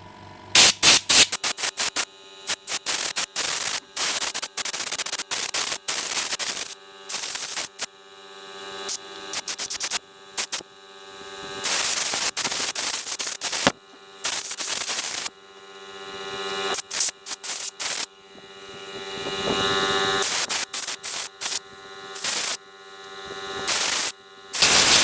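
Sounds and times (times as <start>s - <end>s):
steady hum: 0.0s - 25.0s
vacuum cleaner motor bursts: 0.5s - 25.0s.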